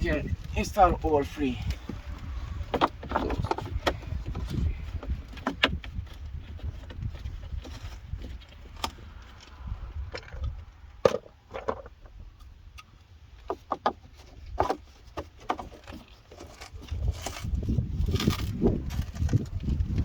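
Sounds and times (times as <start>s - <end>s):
wind rumbling on microphone: 0.0s - 12.8s, 14.1s - 20.0s
plastic panels knocking and clicking: 2.7s - 9.0s, 13.4s - 16.2s.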